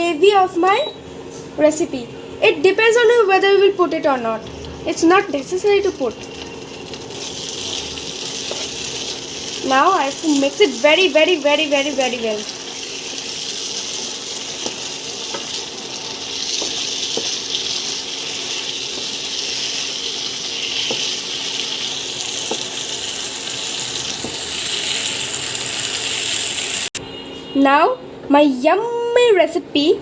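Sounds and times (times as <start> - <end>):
food sizzling in a pan: 6.0 - 27.0.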